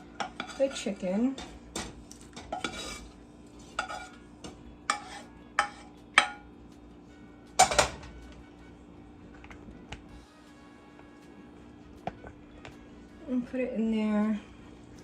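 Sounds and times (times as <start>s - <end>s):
utensil scraping a pot: 0.0s - 6.0s
utensil clinking against a bowl: 0.2s - 6.4s.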